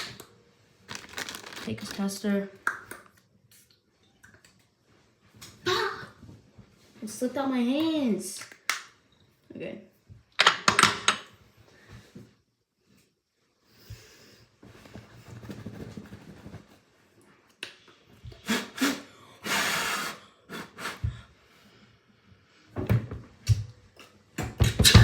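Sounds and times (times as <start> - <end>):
rustling: 0.9 - 2.0
close breathing and sniffing: 18.3 - 22.0
short breath huffs: 18.3 - 22.0.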